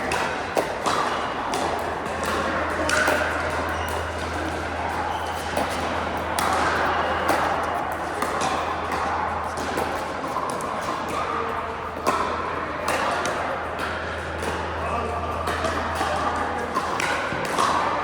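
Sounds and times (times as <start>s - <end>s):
paddles hitting plastic ball: 0.0s - 11.2s
steady low hum: 0.0s - 18.0s.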